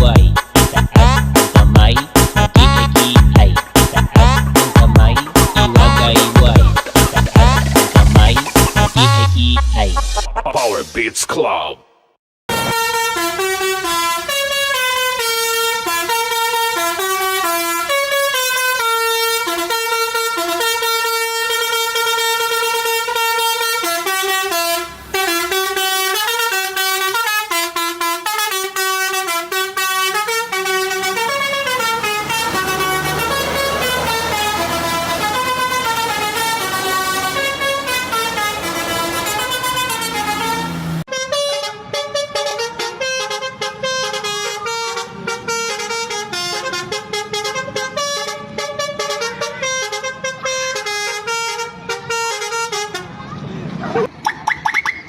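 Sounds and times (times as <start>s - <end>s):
musical truck horn: 0.0s - 10.4s, 12.5s - 53.2s.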